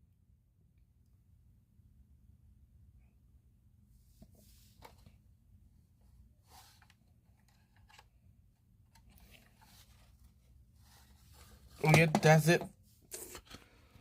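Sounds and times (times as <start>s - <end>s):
low steady hum: 0.0s - 14.0s
soft handling clicks and rustles: 6.6s - 8.2s, 8.9s - 14.0s.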